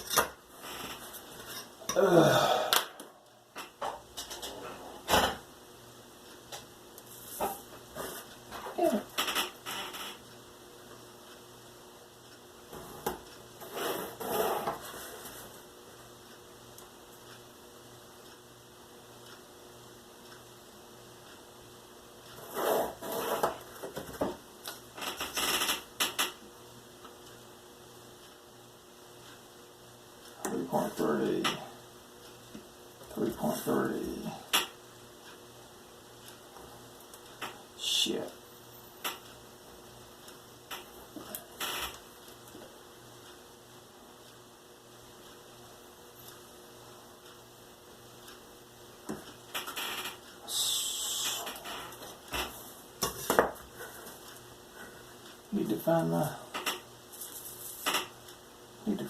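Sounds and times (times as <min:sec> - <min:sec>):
short voice sound: 0:50.5 - 0:51.5.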